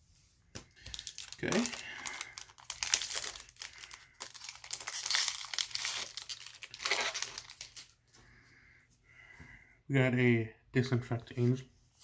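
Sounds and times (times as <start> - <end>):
foil wrapper crinkling: 0.6 - 8.0.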